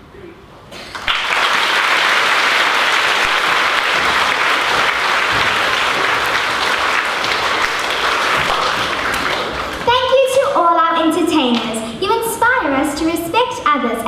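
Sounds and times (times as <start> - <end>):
audience applauding loudly: 0.9 - 10.1.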